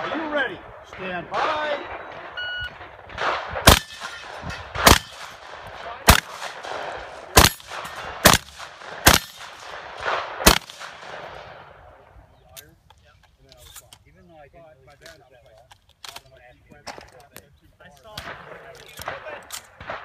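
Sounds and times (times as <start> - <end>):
shotgun shots: 0.0 - 11.8, 18.1 - 20.0
shot timer beep: 2.0 - 2.8
gun handling noise: 14.9 - 19.8.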